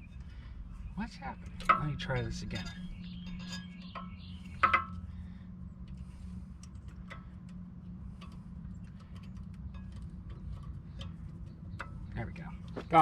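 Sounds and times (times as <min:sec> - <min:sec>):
steady low hum: 0:00.0 - 0:13.0
sharp metallic clanks: 0:01.4 - 0:05.1.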